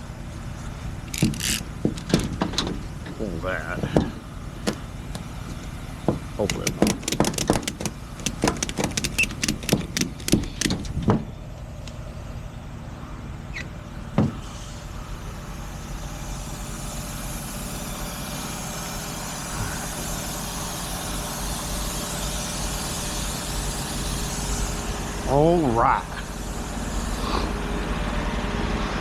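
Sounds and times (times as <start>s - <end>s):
truck engine running: 0.0s - 29.0s
rapid sharp clicks: 6.4s - 10.9s.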